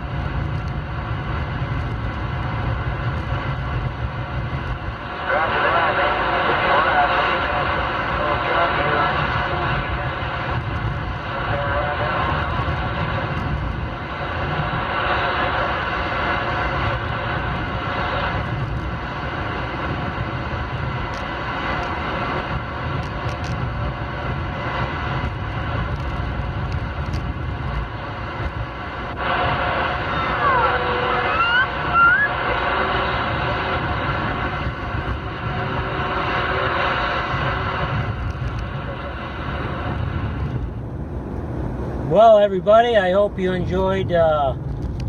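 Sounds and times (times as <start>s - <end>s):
road and tyre noise: 0.0s - 45.0s
radio static hiss: 4.6s - 40.6s
short rising whistles: 31.3s - 32.4s.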